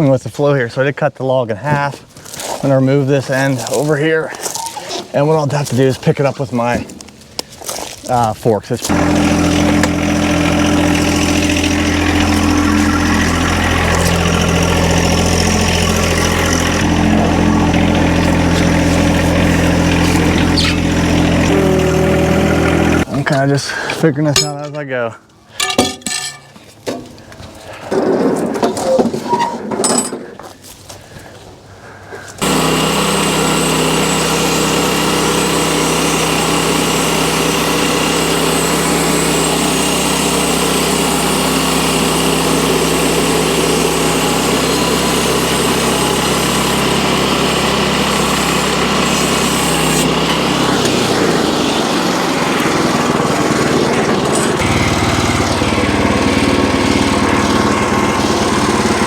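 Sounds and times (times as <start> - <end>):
engine running: 3.6 - 28.0, 32.3 - 59.0
metal knocks and clanks: 25.6 - 27.2.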